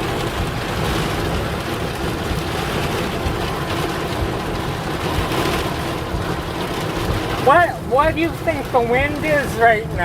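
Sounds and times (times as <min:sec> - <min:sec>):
heavy rain battering vehicle: 0:00.0 - 0:10.0
wind gusts buffeting van: 0:00.0 - 0:10.0.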